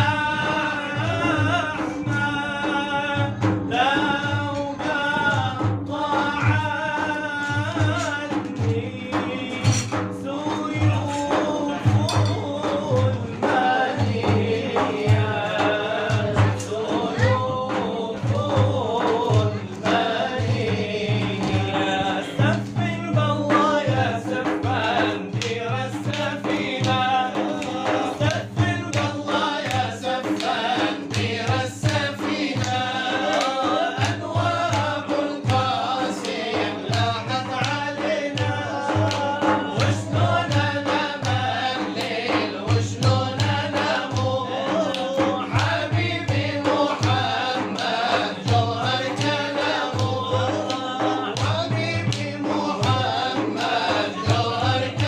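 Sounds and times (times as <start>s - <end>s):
hand-drum beats: 0.0s - 55.0s
men singing devotional song: 0.0s - 55.0s.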